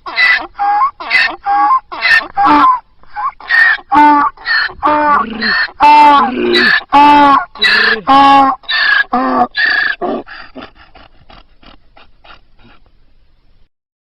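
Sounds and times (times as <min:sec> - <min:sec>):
donkey braying: 0:00.0 - 0:12.9
donkey breathing: 0:07.6 - 0:12.9.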